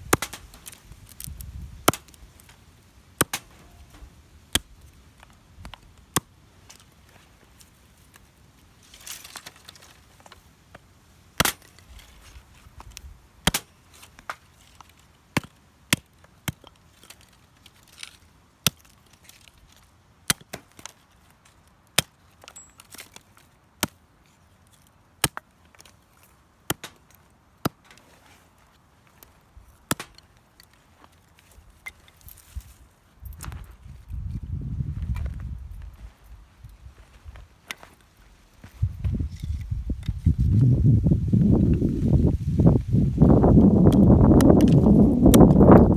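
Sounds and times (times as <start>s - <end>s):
wood being chopped: 0.0s - 2.6s, 3.2s - 6.8s, 11.4s - 12.1s, 12.8s - 17.2s, 20.3s - 20.9s, 25.2s - 25.9s, 26.7s - 28.0s, 29.9s - 30.3s.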